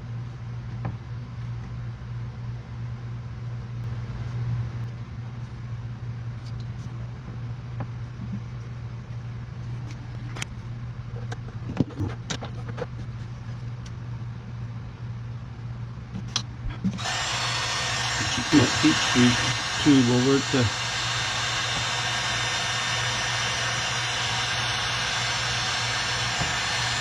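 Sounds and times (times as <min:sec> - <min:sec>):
steady low hum: 0:00.0 - 0:27.0
heat gun blowing hiss: 0:17.0 - 0:27.0.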